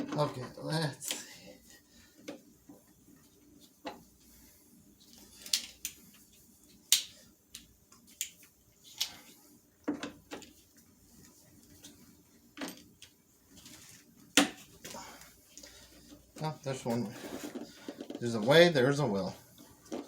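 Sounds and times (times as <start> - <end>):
small parts clicking and knocking: 5.1 - 6.1, 6.7 - 9.3.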